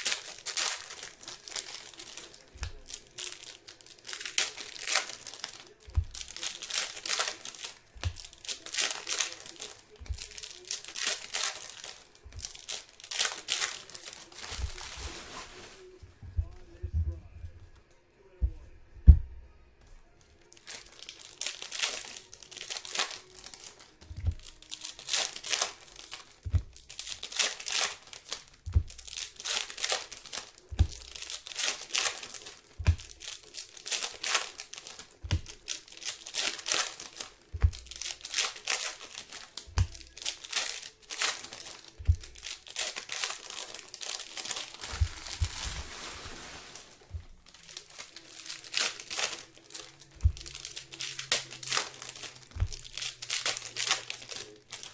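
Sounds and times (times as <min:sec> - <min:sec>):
wrappers tearing and crinkling: 0:00.0 - 0:16.8, 0:20.2 - 0:54.9
soft low thump: 0:16.0 - 0:17.8, 0:18.4 - 0:19.6.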